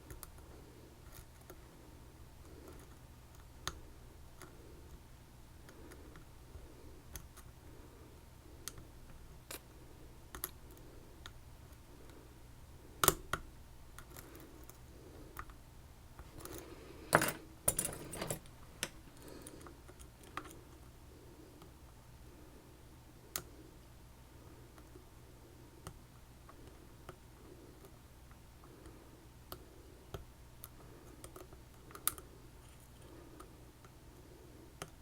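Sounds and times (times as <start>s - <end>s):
faint hum: 0.0s - 35.0s.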